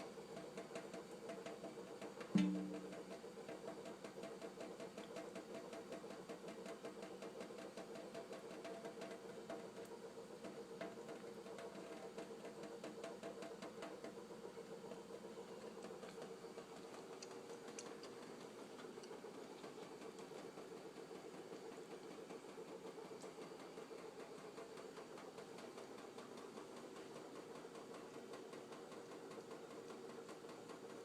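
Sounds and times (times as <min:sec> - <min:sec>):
patter of small water ticks: 0:00.0 - 0:31.0
faucet running thin stream: 0:02.0 - 0:03.4.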